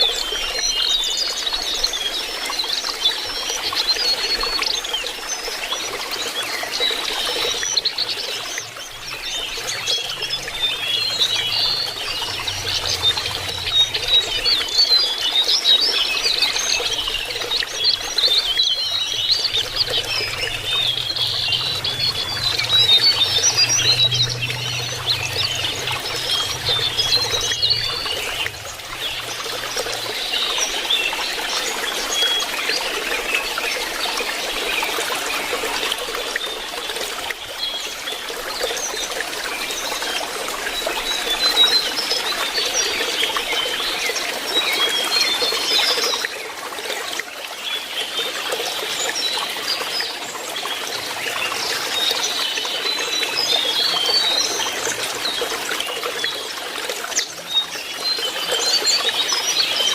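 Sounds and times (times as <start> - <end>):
water trickling: 0.0 - 59.9
bird chirping: 7.3 - 31.3.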